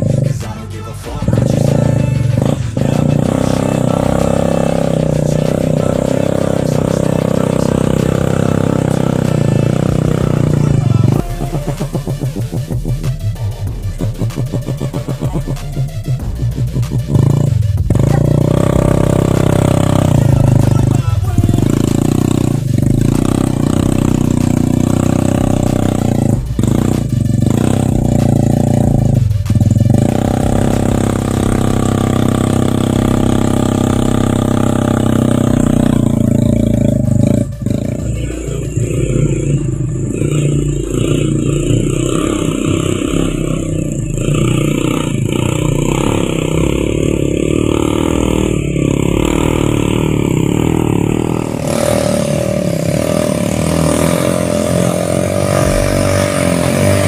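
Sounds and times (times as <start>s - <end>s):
motorcycle engine under load: 0.0s - 57.0s.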